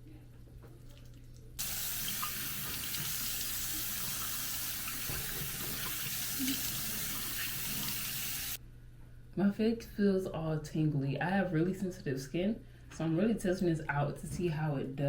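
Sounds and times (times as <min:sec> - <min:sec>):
water running into sink: 0:01.6 - 0:08.6.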